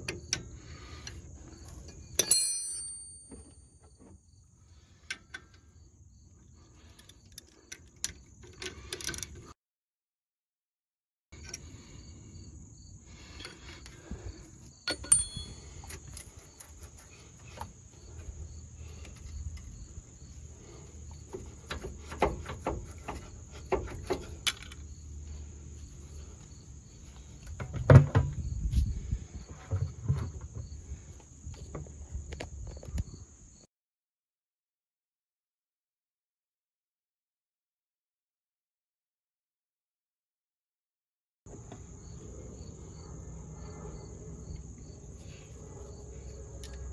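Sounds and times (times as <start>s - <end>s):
insects droning: 0.0s - 2.3s, 3.4s - 9.5s, 11.4s - 33.7s, 41.5s - 46.9s.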